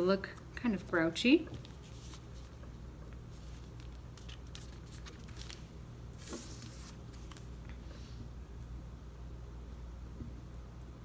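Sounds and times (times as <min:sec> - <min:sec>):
low steady hum: 0:00.0 - 0:11.0
paper rustling: 0:01.5 - 0:07.6.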